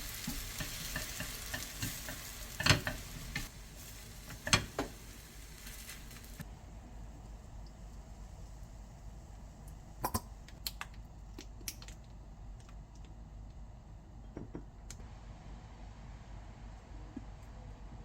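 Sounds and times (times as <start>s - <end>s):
low steady hum: 0.0s - 18.0s
kitchen things clicking and tapping: 0.2s - 3.5s, 4.3s - 5.0s, 14.3s - 14.8s.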